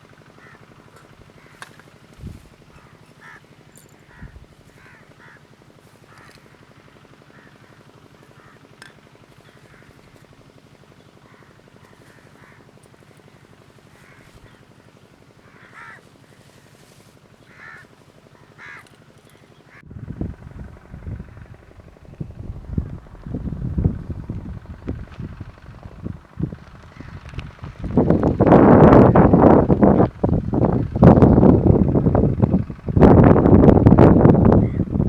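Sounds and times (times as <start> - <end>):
low hum: 0.0 - 35.0
crows cawing: 0.2 - 19.9, 24.9 - 29.4, 34.6 - 34.9
loud low rumbling: 19.7 - 35.0.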